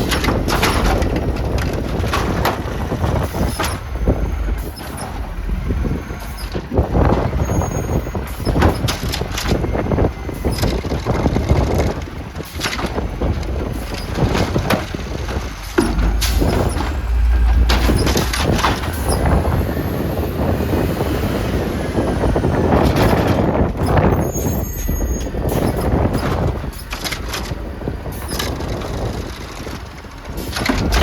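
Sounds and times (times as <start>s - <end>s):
garbage truck running: 0.0s - 31.0s
wind buffeting microphone: 0.0s - 31.0s.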